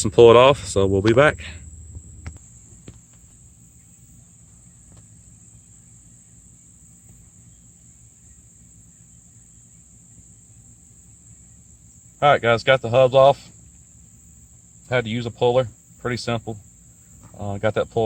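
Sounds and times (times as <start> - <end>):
faint low rumble: 0.0 - 11.9
crickets trilling: 0.0 - 18.0.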